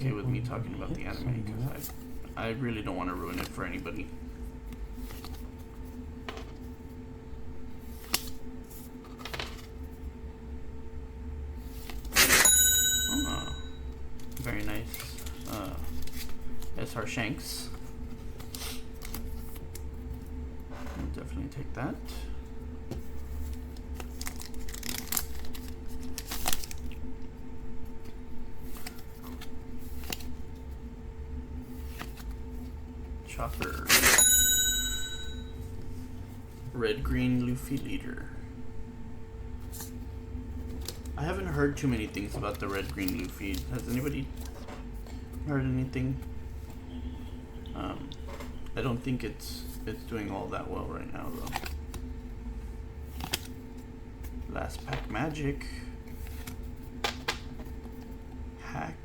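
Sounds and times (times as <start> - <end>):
faint steady hum: 0.0 - 59.0
cards being shuffled: 3.1 - 6.7, 7.8 - 10.0, 11.6 - 12.5, 14.1 - 17.0, 17.6 - 20.3, 22.9 - 27.1, 27.8 - 30.8, 31.6 - 32.7, 33.4 - 34.2, 39.6 - 45.3, 51.2 - 52.3, 53.0 - 55.2, 56.0 - 58.2
card wrappers rustling: 14.1 - 20.2, 22.9 - 27.2, 39.5 - 45.2
foil wrapper crinkling: 23.9 - 27.0.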